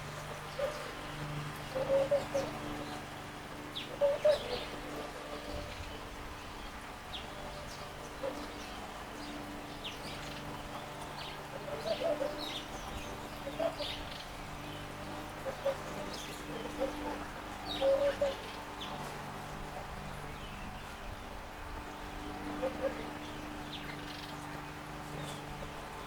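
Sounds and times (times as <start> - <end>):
birds short low calls: 0.0 - 21.3, 22.0 - 26.0
steady low hum: 0.0 - 26.0.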